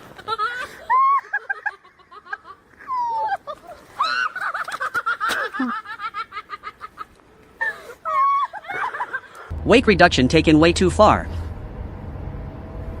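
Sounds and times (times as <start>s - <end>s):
person laughing hard: 0.0s - 9.5s.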